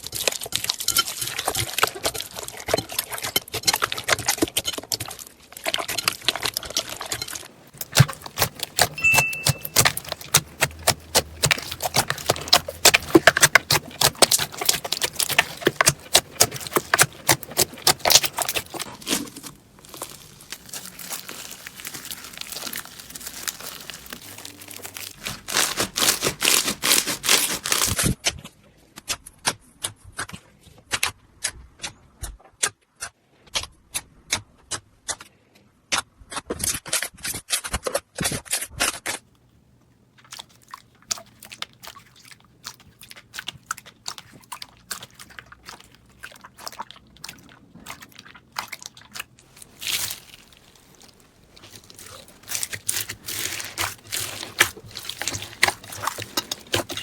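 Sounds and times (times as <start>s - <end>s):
slime crackling and popping: 0.0s - 28.2s, 42.7s - 57.0s.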